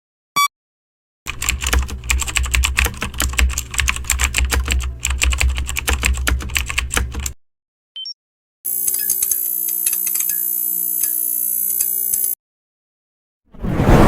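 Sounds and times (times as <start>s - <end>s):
computer keyboard typing: 1.3s - 7.4s, 8.7s - 12.4s.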